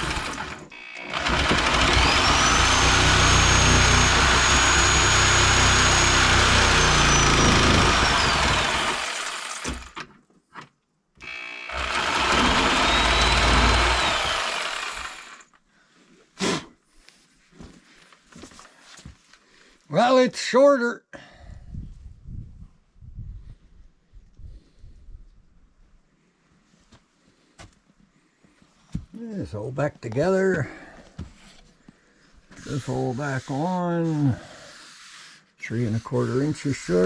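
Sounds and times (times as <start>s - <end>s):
power saw cutting wood: 0.0s - 10.1s, 11.2s - 15.5s, 32.6s - 37.0s.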